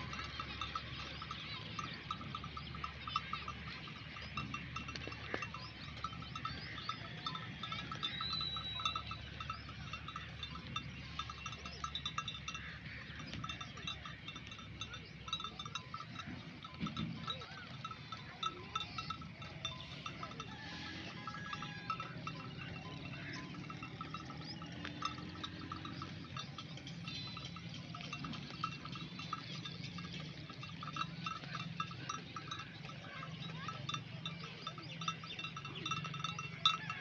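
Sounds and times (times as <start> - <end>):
sheep bells clinking: 0.0 - 37.0.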